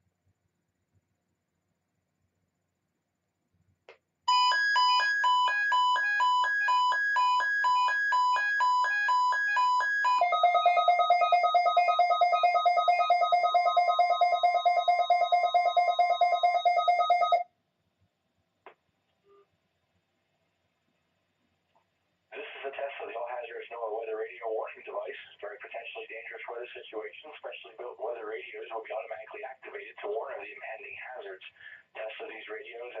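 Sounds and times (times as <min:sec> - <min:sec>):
two-pitch alarm beeps: 0:04.3 - 0:17.4
faint steady warning tone: 0:04.3 - 0:17.5.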